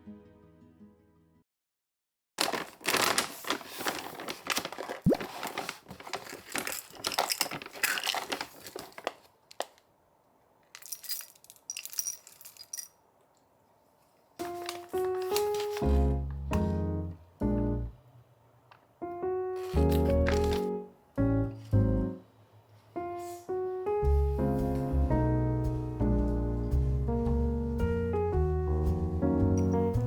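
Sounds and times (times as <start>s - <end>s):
crinkly packaging rustling: 2.4s - 9.9s, 10.7s - 12.9s, 14.4s - 16.2s, 19.6s - 20.8s.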